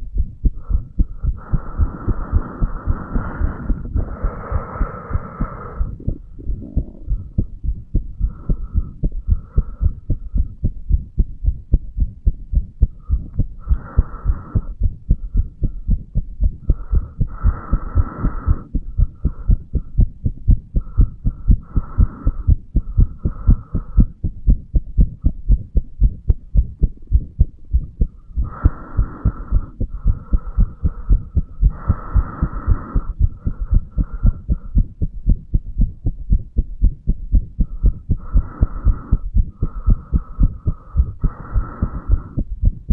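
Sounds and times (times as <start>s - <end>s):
heartbeat thumps: 0.0s - 42.9s.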